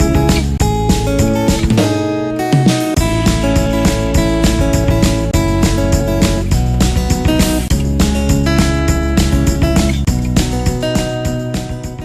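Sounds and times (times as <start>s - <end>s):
guitar-led instrumental music: 0.0s - 12.0s.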